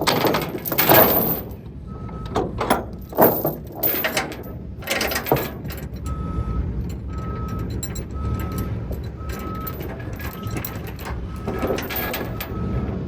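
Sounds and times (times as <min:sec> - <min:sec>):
metal clanks and rattles: 0:00.0 - 0:13.0
reversing alarm beeping: 0:01.8 - 0:03.2, 0:06.0 - 0:13.0.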